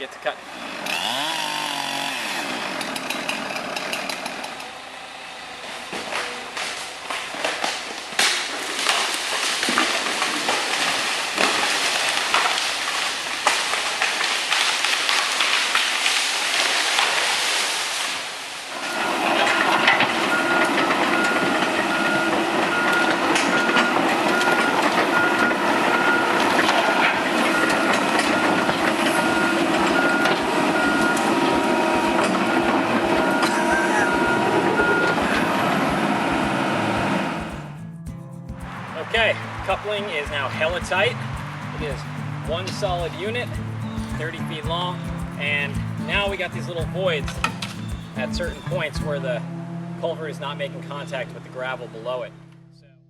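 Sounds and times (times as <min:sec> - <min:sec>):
chainsaw cutting wood: 0:00.4 - 0:37.7
reversing alarm beeping: 0:18.8 - 0:37.6
heavy machine engine running: 0:18.8 - 0:37.9.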